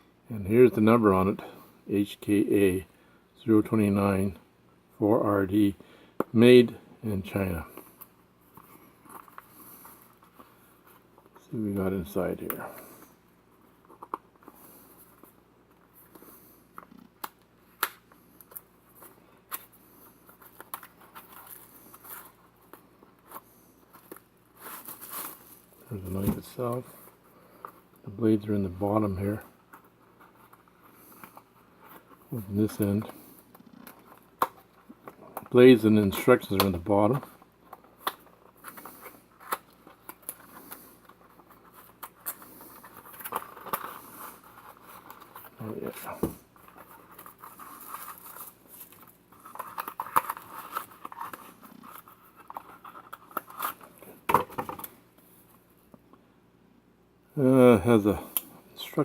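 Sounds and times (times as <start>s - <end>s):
packaging crinkling: 17.7s - 27.9s, 37.4s - 55.0s.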